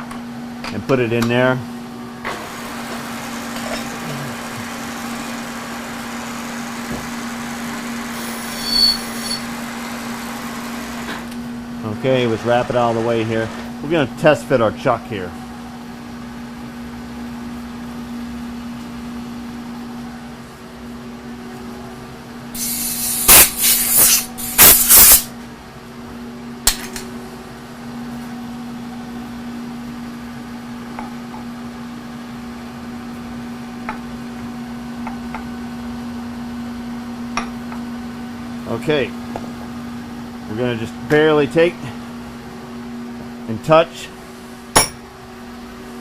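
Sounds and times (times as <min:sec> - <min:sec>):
steady machine hum: 0:00.0 - 0:46.0
compressed air blow gun hissing: 0:22.6 - 0:25.3.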